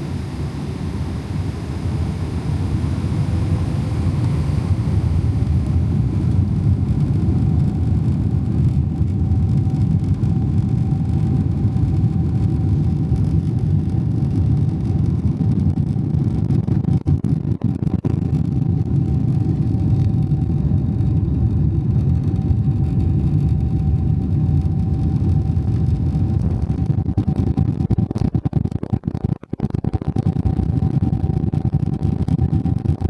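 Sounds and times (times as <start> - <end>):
aircraft cabin engine rumble: 0.0 - 15.7, 18.4 - 27.0
faint steady whine: 0.0 - 33.0.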